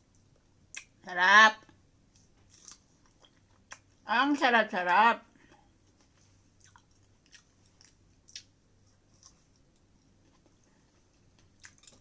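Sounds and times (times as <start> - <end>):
wet chewing mouth clicks: 6.6 - 8.5.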